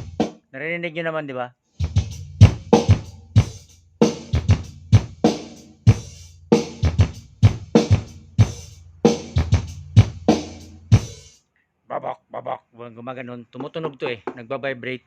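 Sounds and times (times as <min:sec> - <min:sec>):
drum-heavy music through speaker: 0:00.0 - 0:00.4, 0:01.8 - 0:11.4.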